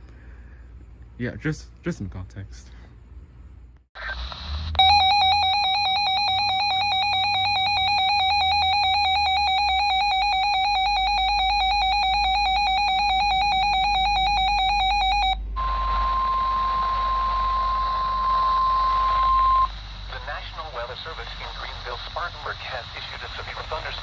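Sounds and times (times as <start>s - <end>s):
steady alarm tone: 4.7s - 20.1s
buzzy warbling alarm beeps: 4.8s - 19.8s.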